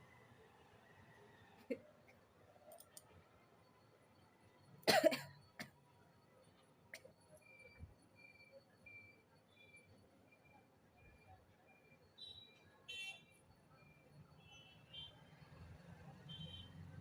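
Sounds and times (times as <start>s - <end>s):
faint clicks: 2.7s - 3.2s.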